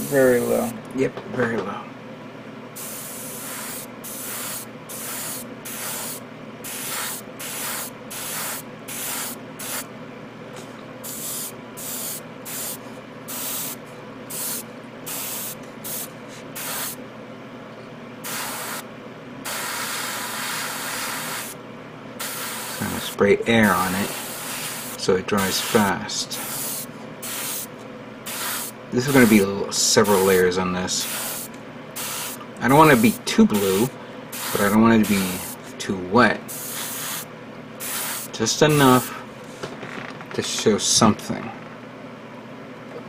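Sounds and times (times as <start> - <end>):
airbrush spray hissing: 2.8 - 9.9, 11.0 - 17.0, 18.2 - 21.6, 22.2 - 27.7, 28.3 - 35.6, 36.5 - 39.2.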